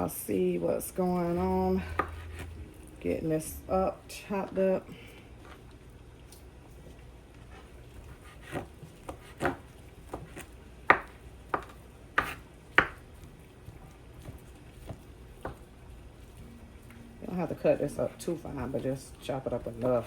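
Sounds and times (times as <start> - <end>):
knife chopping on a cutting board: 1.8 - 2.5, 7.5 - 15.7.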